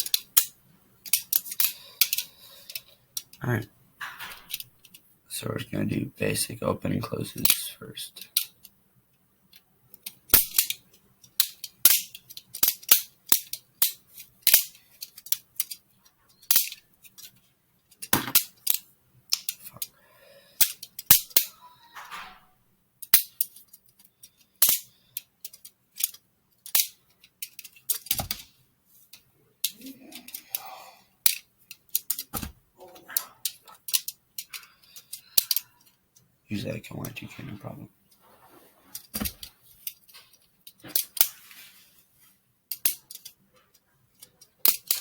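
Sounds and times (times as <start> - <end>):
plastic butterfly knife clacking: 0.0 - 3.4, 10.0 - 15.8, 16.4 - 17.3, 24.2 - 28.2, 31.2 - 32.3.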